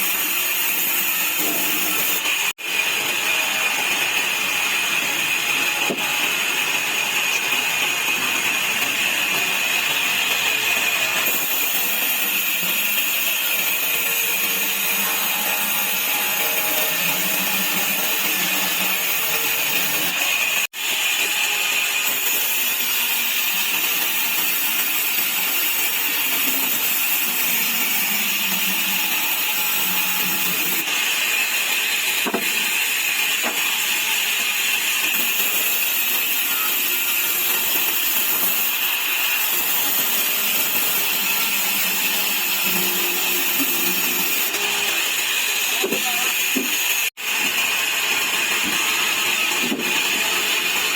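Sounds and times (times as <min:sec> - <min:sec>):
sawmill saw cutting wood: 0:00.0 - 0:50.9.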